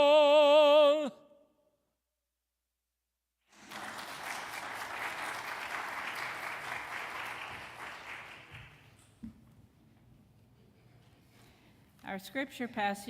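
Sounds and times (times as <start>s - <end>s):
congregation applauding: 3.5s - 9.2s.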